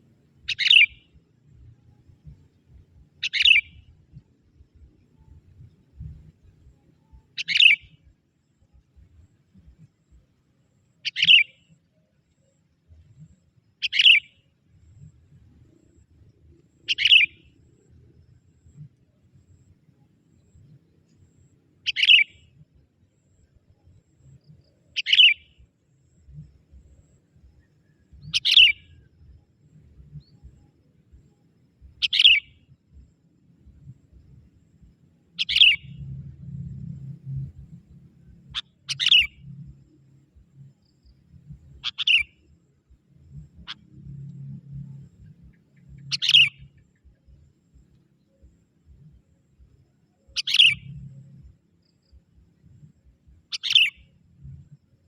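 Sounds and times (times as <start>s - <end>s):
bird calls: 0.4s - 1.2s, 3.2s - 3.9s, 7.1s - 8.0s, 11.0s - 11.7s, 13.8s - 14.4s, 16.8s - 17.6s, 21.8s - 22.4s, 24.9s - 25.6s, 27.8s - 29.1s, 32.0s - 32.6s, 35.4s - 36.0s, 38.3s - 39.6s, 40.9s - 42.4s, 43.5s - 44.4s, 45.2s - 46.9s, 50.2s - 51.1s, 53.5s - 54.2s.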